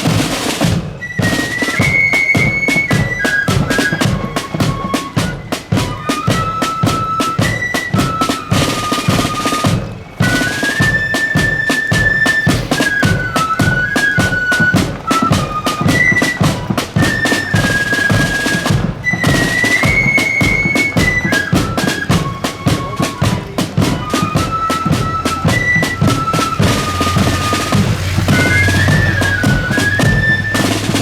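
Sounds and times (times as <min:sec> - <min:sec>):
snare drum rolls: 0:00.0 - 0:31.0
flutes playing melody: 0:00.6 - 0:31.0
bass drum beat: 0:23.4 - 0:31.0.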